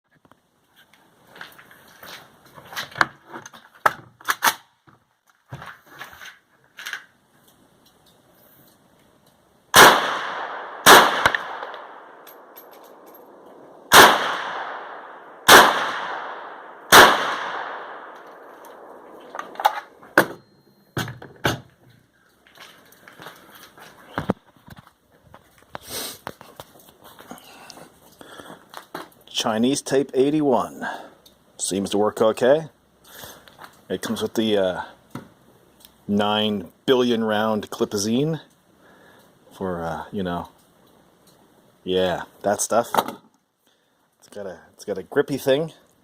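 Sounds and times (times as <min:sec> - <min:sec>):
rifle shots with echo: 0:09.7 - 0:19.6.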